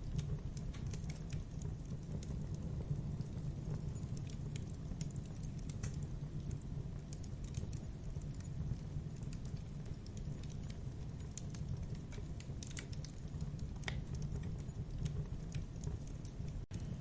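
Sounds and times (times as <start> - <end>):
low rumble of flame: 0.0 - 17.0
wood crackling and popping: 0.0 - 17.0.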